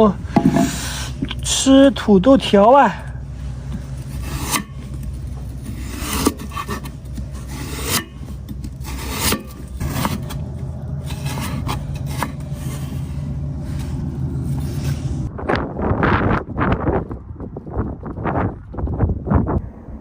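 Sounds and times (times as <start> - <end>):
knife scraping raw potato: 4.0 - 15.1.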